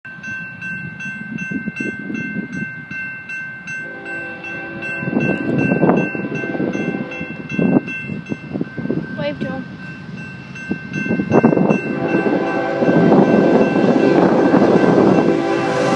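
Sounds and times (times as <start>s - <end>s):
freight train rumble: 0.0s - 15.9s
railroad crossing bell ringing: 0.0s - 15.9s
train horn: 3.8s - 7.6s, 11.9s - 15.9s.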